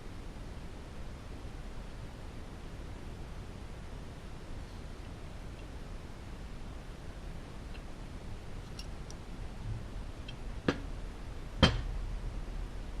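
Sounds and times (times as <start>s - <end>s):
steady low hum: 0.0s - 13.0s
sharp knocks: 11.6s - 12.0s.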